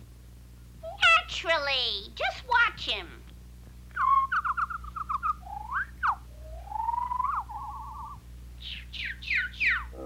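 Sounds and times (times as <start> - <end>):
whistled cartoon bird calls: 4.0 - 9.9.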